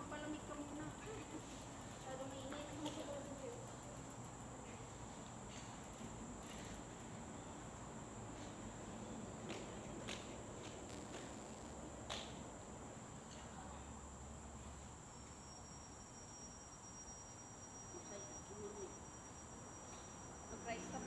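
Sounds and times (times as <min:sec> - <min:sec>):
insects chirring: 0:00.0 - 0:21.0
thin high tone: 0:15.1 - 0:21.0.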